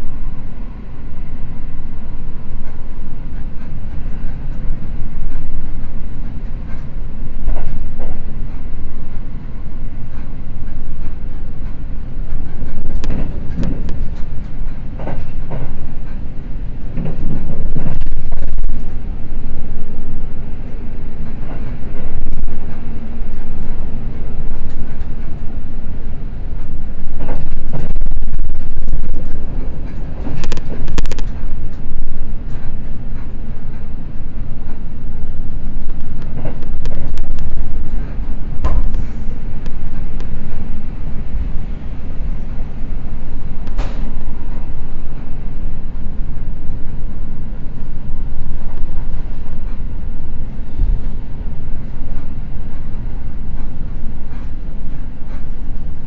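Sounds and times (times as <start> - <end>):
train rumbling at speed: 0.0 - 56.0.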